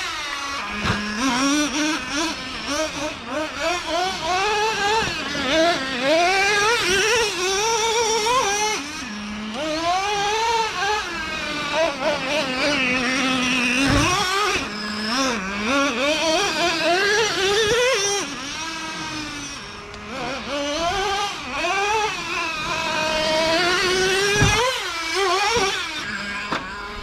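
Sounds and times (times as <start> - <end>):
rc truck engine revving: 0.0 - 27.0
low thump: 24.3 - 24.7.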